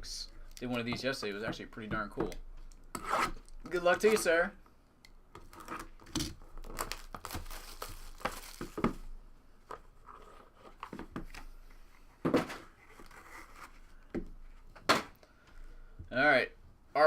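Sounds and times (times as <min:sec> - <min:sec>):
plastic wrapping tearing and crinkling: 0:05.6 - 0:09.1.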